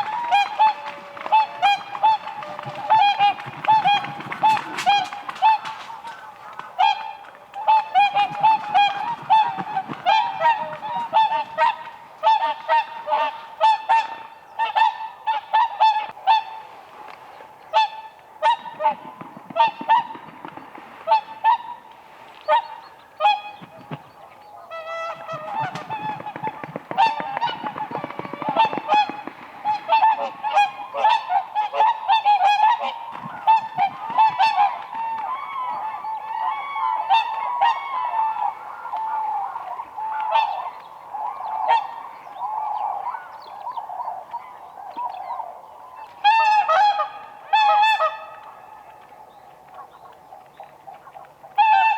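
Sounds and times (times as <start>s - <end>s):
swans honking: 0.0s - 51.9s.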